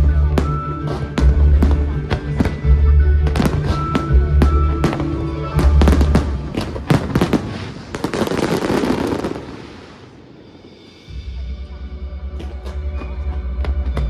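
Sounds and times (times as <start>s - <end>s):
music with deep bass: 0.0s - 7.3s
fireworks bangs: 0.0s - 10.9s
fireworks crackling: 0.0s - 11.1s.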